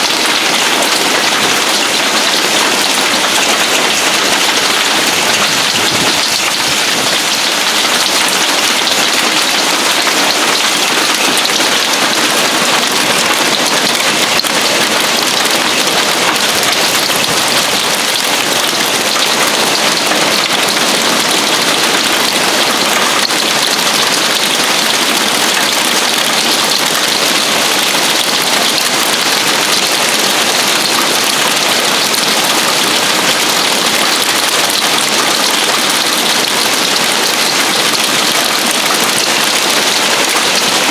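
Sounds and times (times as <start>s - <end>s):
hail pelting on a roof: 0.0s - 40.9s.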